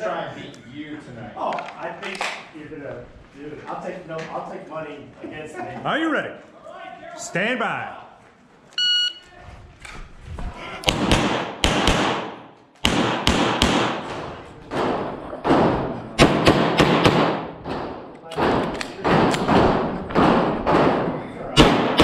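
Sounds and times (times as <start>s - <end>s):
shot timer beep: 8.8s - 9.2s
pistol shots echoing: 10.9s - 14.1s, 14.7s - 22.0s.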